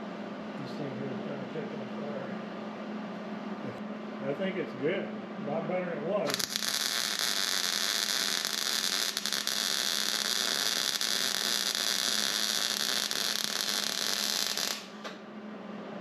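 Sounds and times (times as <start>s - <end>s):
welder low hum: 4.2s - 15.3s
welder frying hiss and crackle: 6.3s - 15.1s.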